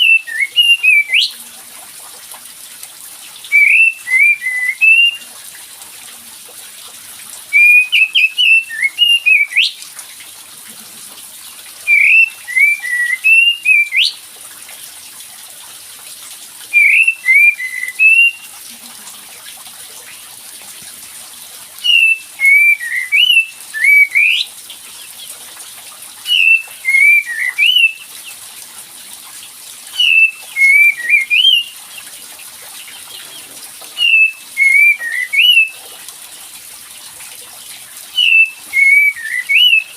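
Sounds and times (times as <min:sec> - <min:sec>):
recorded bird song whistles: 0:00.0 - 0:01.4, 0:03.5 - 0:05.3, 0:07.5 - 0:09.8, 0:11.9 - 0:14.2, 0:16.7 - 0:18.5, 0:21.8 - 0:24.5, 0:26.3 - 0:28.1, 0:30.0 - 0:31.8, 0:33.1 - 0:35.8, 0:38.1 - 0:39.9.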